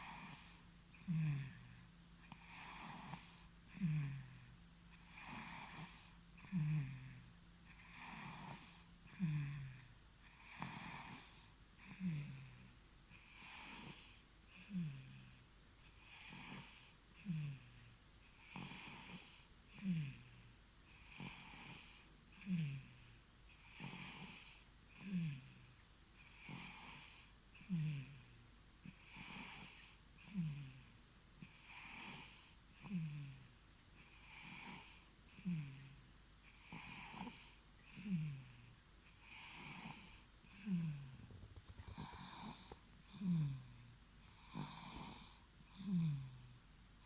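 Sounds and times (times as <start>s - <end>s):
baby snoring: 0.0s - 1.7s, 2.3s - 4.4s, 5.0s - 9.7s, 10.3s - 12.4s, 18.4s - 20.2s, 34.2s - 35.8s, 39.2s - 43.7s, 44.3s - 46.4s.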